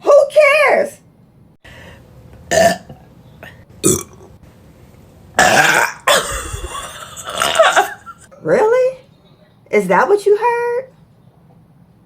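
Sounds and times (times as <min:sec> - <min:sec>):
person burping: 0:02.5 - 0:03.1, 0:03.8 - 0:04.3, 0:05.4 - 0:08.2.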